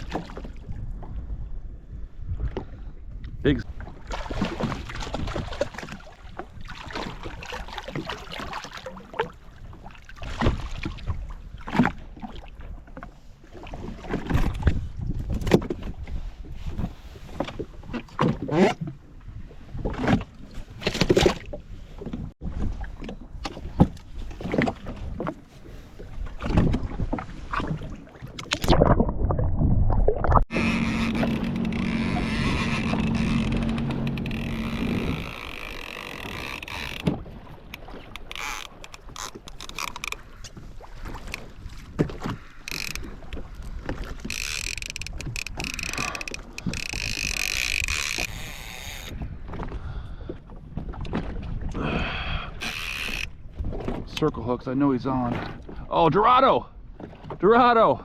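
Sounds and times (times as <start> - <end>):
water splashes and knocks: 0.0 - 1.2, 2.4 - 51.8, 52.7 - 54.3, 55.1 - 55.9, 56.9 - 57.6
wind: 0.0 - 58.0
steady low drone: 30.5 - 36.7.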